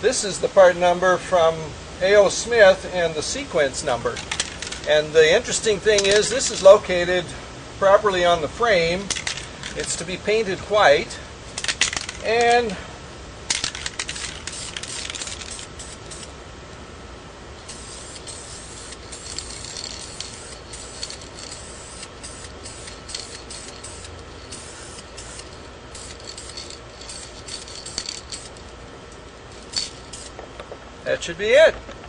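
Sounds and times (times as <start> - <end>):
spray paint hissing: 4.1 - 6.7, 9.0 - 10.1, 11.5 - 12.8, 13.5 - 16.4, 17.6 - 28.7, 29.5 - 30.5.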